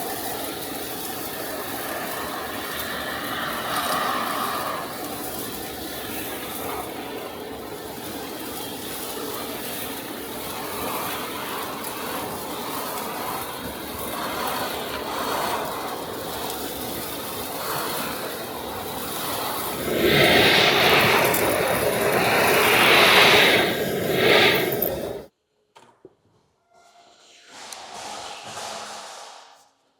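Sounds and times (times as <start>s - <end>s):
industrial vacuum blower running: 17.7s - 25.3s.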